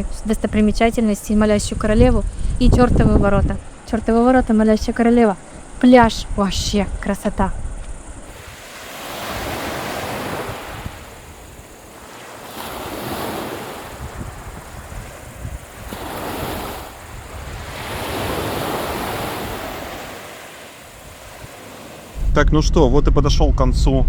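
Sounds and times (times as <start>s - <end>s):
wind on microphone: 0.0s - 5.1s, 5.7s - 24.0s
waves washing onto shore: 8.3s - 22.2s.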